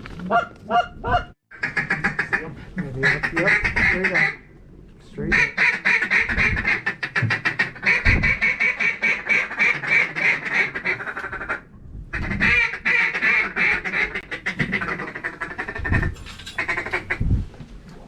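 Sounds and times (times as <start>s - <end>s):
duck quacking rapidly: 0.7s - 4.4s
wind buffeting microphone: 3.5s - 4.0s, 6.1s - 8.6s, 11.4s - 12.9s, 15.5s - 17.9s.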